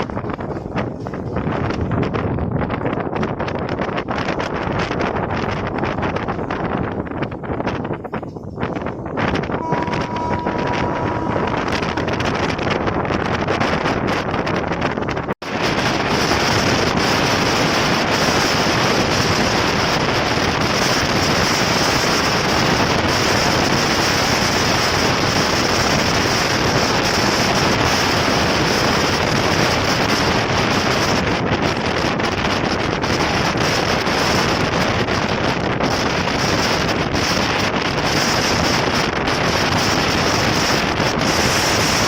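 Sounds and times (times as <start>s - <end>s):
wind rushing on microphone: 0.0s - 42.0s.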